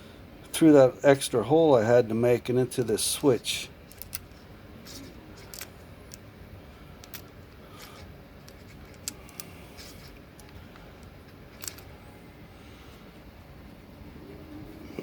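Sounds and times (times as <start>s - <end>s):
low background noise: 0.0s - 15.0s
faint clicks and rustles: 3.9s - 12.0s.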